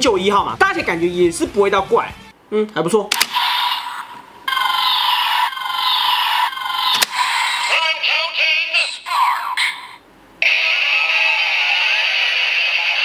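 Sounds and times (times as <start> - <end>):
sharp click: 3.1 - 3.4, 6.9 - 7.3.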